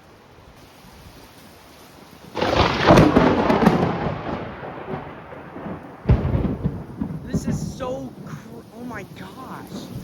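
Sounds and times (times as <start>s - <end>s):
thunder crack and rumble: 2.3s - 10.0s.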